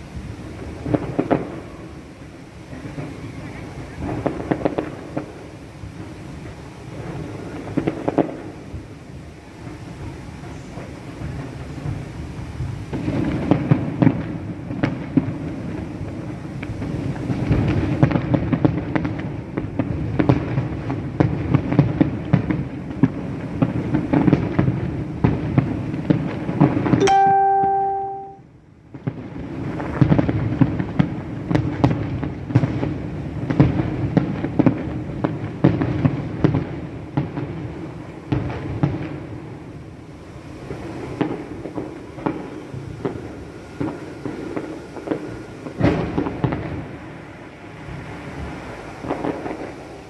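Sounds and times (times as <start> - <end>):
fireworks bangs and crackling: 0.0 - 28.0, 28.8 - 50.0
brief steady tone: 27.0 - 28.4.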